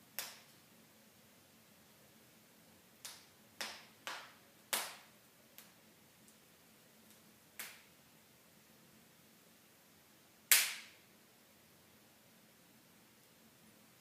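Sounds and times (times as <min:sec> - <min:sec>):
wood fire crackling: 0:00.0 - 0:00.8, 0:02.3 - 0:08.2
faint steady hiss: 0:00.0 - 0:14.0.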